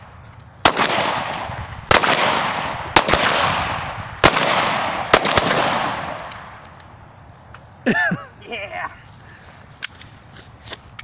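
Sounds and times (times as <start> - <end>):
gunshots with rolling echo: 0.6 - 6.6.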